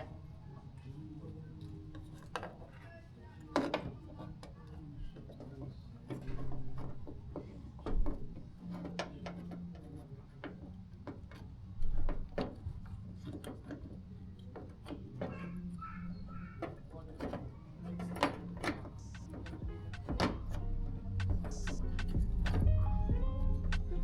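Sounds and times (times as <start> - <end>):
clicks and knocks of door lock parts: 16.6 - 20.6.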